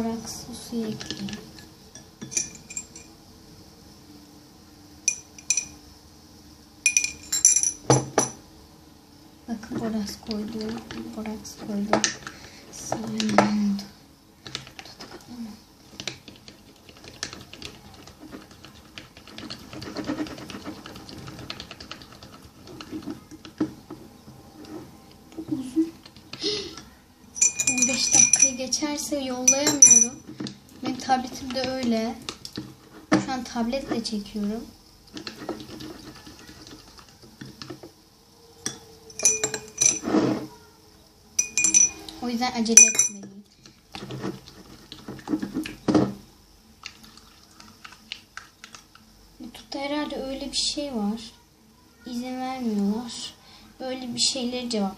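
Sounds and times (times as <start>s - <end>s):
spoon clinking against bowl: 1.6s - 3.1s, 5.1s - 5.8s, 6.9s - 8.4s, 27.4s - 28.7s, 29.4s - 30.2s, 38.6s - 40.0s, 41.4s - 42.1s, 42.8s - 43.3s
spoon stirring sticky slime: 14.4s - 26.4s, 27.4s - 37.8s, 41.4s - 45.9s, 46.7s - 49.9s
spoon scraping bowl: 16.0s - 23.6s, 29.4s - 30.5s, 35.1s - 37.1s, 38.7s - 40.5s.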